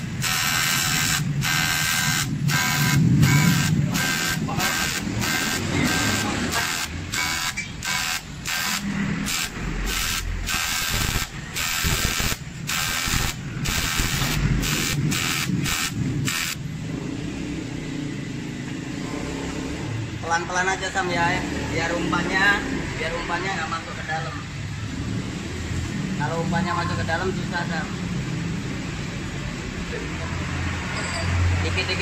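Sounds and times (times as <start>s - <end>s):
welding arc buzzing and hissing: 0.0s - 16.6s.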